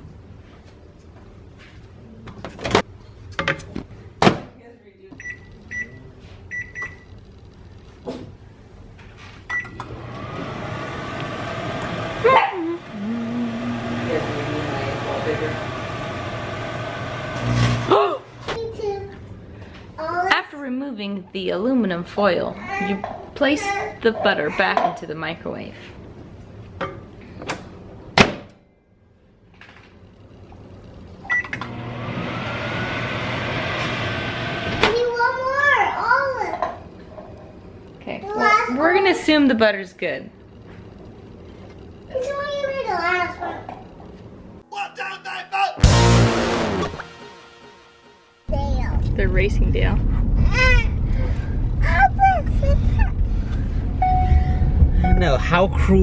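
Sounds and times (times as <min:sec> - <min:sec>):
microwave keypad beep: 0:05.2 - 0:07.1, 0:09.5 - 0:09.8, 0:31.3 - 0:31.6, 0:54.0 - 0:55.4
microwave oven humming: 0:09.5 - 0:19.8, 0:29.8 - 0:35.3
steady low tone: 0:12.8 - 0:16.8, 0:45.8 - 0:56.0
short beep: 0:54.0 - 0:55.6.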